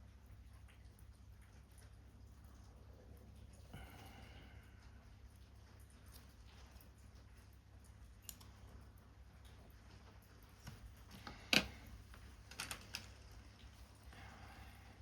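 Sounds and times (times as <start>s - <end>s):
small clicks and taps of paper: 10.5s - 13.7s.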